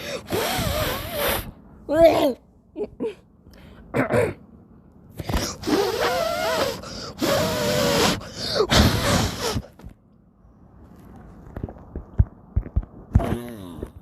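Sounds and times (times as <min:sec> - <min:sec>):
person crying out strained: 0:05.5 - 0:09.7.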